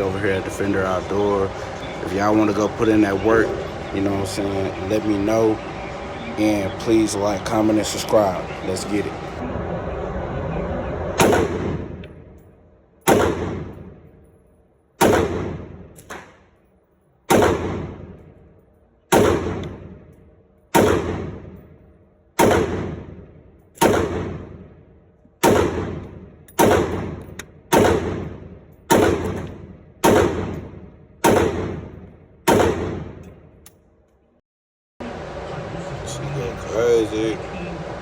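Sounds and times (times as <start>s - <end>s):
gunshots with echoing decay: 11.2s - 14.3s, 15.0s - 16.6s, 17.3s - 33.6s.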